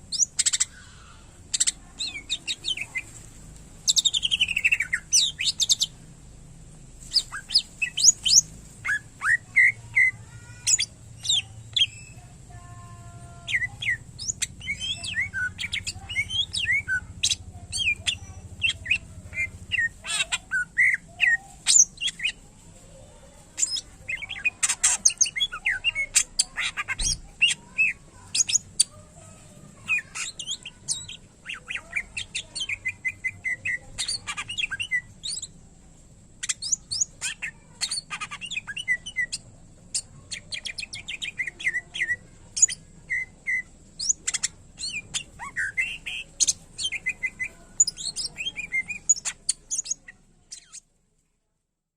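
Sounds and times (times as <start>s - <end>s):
bird singing chirps and whistles: 13.4s - 22.4s.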